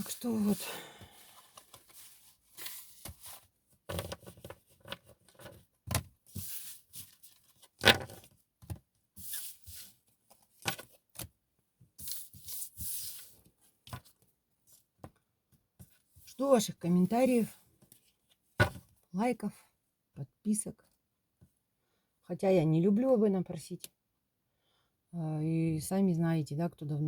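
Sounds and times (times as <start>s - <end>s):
cards swishing and sliding on table: 1.3s - 3.5s, 6.3s - 7.3s, 9.2s - 10.0s, 12.0s - 13.4s.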